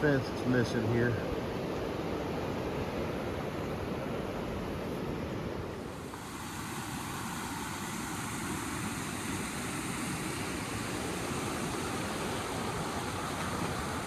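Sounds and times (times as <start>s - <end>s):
floodwater rushing: 5.7s - 14.0s.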